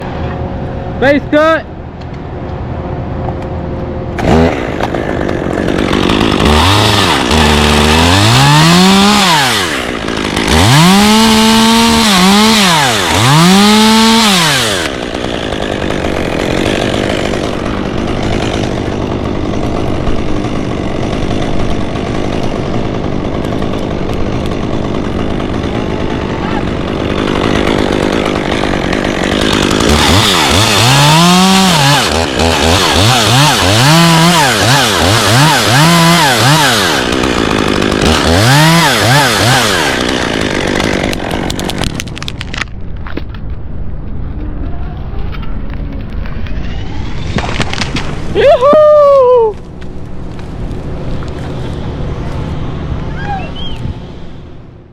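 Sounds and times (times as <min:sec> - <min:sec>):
chainsaw revving and cutting wood: 0:04.1 - 0:42.6, 0:46.5 - 0:53.2.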